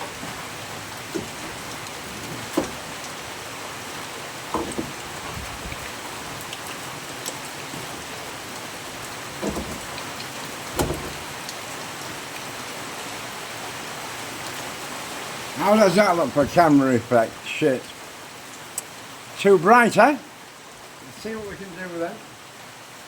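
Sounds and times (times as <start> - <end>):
knocks and clunks: 0.0 - 3.4, 4.4 - 6.5, 9.3 - 11.6
rain falling: 0.0 - 23.0.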